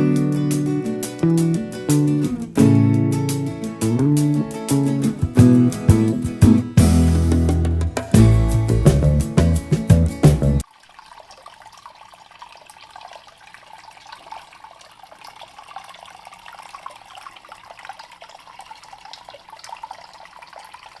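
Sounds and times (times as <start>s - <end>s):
guitar music: 0.0s - 10.6s
fountain water splashing: 10.6s - 21.0s
water dripping: 10.6s - 21.0s.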